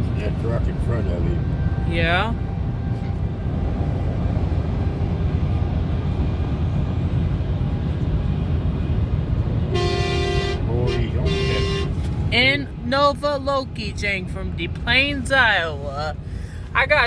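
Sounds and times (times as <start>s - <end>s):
highway traffic rumble: 0.0s - 17.0s
truck air horn blast: 9.7s - 12.1s.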